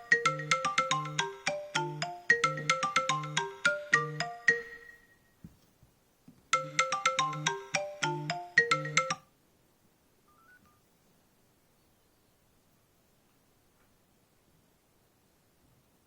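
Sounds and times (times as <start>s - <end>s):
phone ringtone tune: 0.0s - 5.2s, 6.6s - 9.2s, 10.3s - 10.6s.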